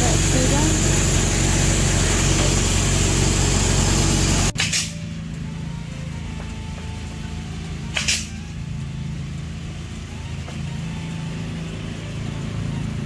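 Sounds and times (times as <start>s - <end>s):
sharp hissing crack: 0.0s - 5.0s, 7.9s - 8.5s
low engine hum: 0.0s - 13.0s.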